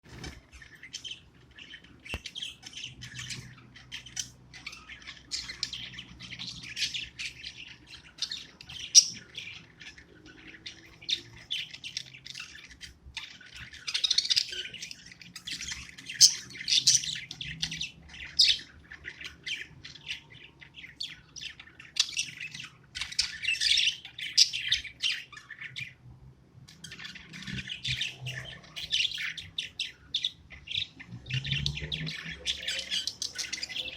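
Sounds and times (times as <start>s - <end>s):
budgie chattering and chirping: 0.4s - 26.0s.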